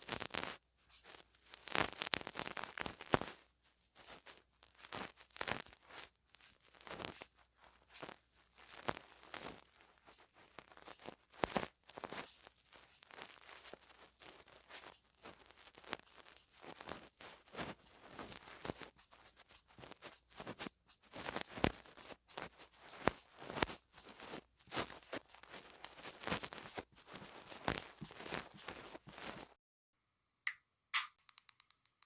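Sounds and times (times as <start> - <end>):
cosmetics containers tapping and clicking: 31.0 - 32.0.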